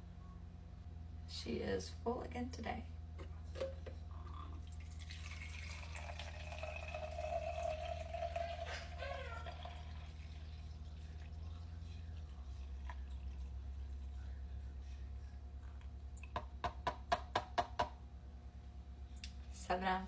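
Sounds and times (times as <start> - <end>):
steady low hum: 0.0 - 17.1, 17.8 - 20.0
milk trickling into a container: 4.6 - 14.7.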